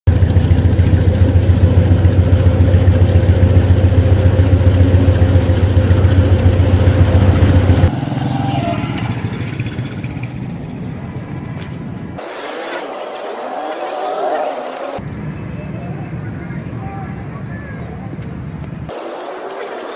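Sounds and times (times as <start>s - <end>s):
large engine running: 0.0s - 11.2s
background noise: 7.9s - 19.9s.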